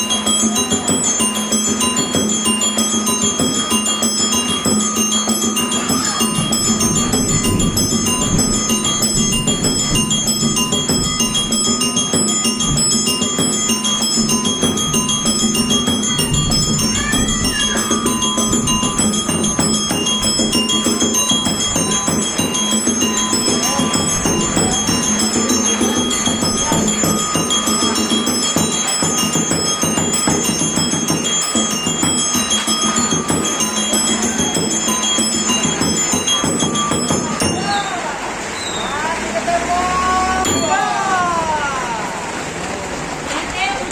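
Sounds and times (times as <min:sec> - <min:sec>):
mallet percussion music: 0:00.0 - 0:42.6.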